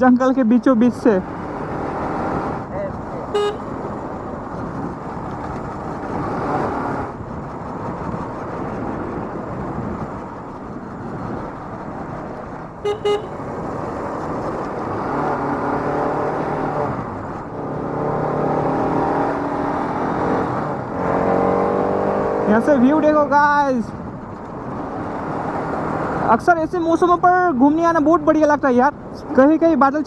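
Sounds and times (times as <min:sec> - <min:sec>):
horn beeps: 0:03.3 - 0:03.7, 0:12.8 - 0:13.4
motorcycle engine running: 0:03.4 - 0:15.0.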